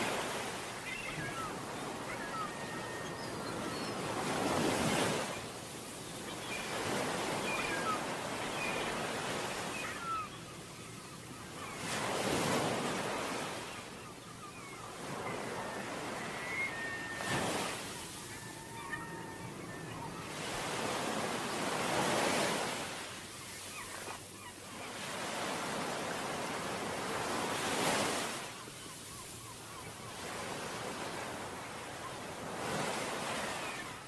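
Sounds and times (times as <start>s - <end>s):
waves breaking: 0.0s - 10.3s.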